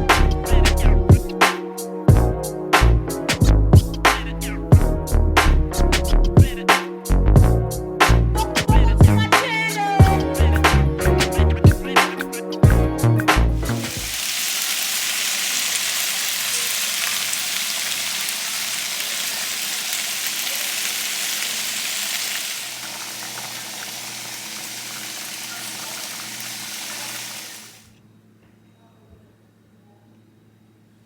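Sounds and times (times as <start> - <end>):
running water: 13.6 - 27.9.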